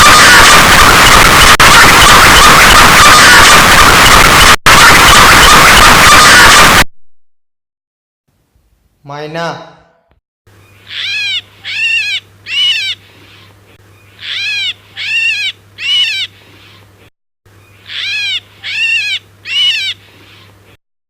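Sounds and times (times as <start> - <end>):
myna calling: 10.7 - 16.6, 17.8 - 20.5.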